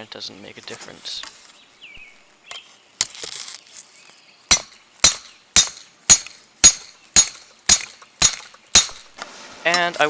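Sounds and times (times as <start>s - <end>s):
hammer striking hot metal: 4.5s - 9.0s.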